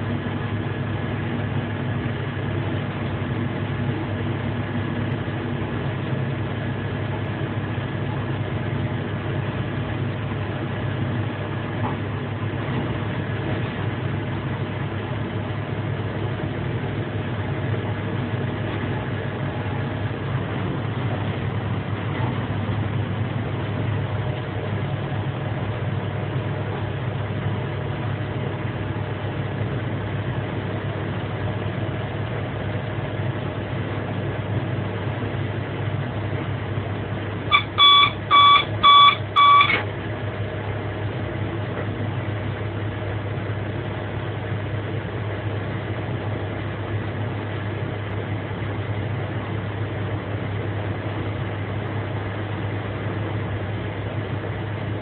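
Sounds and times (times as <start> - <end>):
train cab running hum: 0.0 - 55.0
electronic warning beeps: 37.5 - 39.9.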